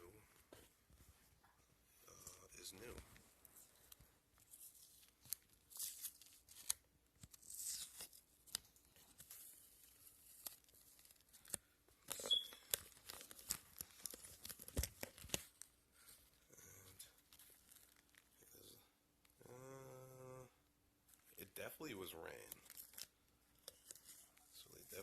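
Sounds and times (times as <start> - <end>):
tape ripping and crinkling: 4.4 - 15.7, 22.4 - 24.3.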